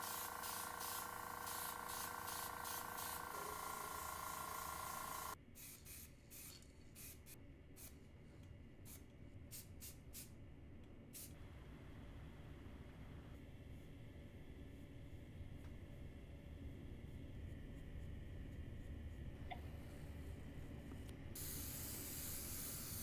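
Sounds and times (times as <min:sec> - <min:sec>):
short airbrush spurts: 0:00.0 - 0:07.2, 0:21.4 - 0:23.0
airbrush spraying hiss: 0:00.0 - 0:07.3, 0:21.4 - 0:23.0.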